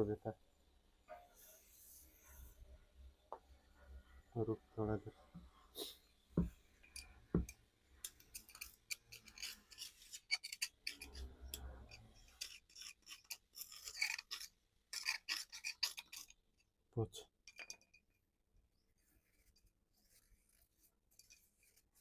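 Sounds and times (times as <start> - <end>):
metal tools knocking and scraping: 6.4 - 16.4, 17.4 - 18.2.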